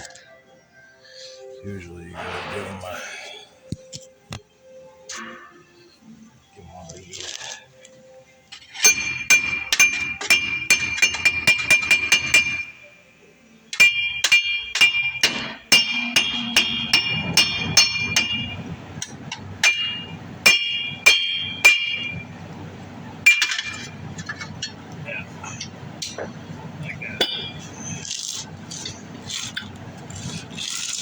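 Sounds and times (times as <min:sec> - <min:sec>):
hammer clanging on steel: 0:08.7 - 0:12.8, 0:13.7 - 0:22.3, 0:23.2 - 0:24.8, 0:27.2 - 0:28.0.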